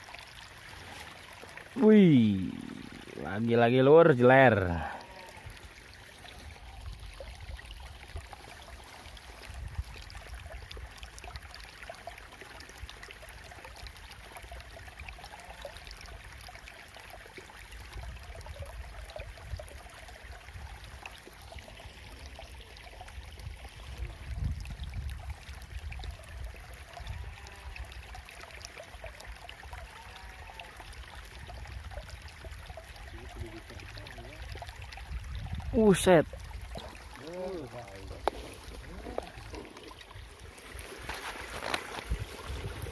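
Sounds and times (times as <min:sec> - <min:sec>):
water trickling in a ditch: 0:00.0 - 0:42.9.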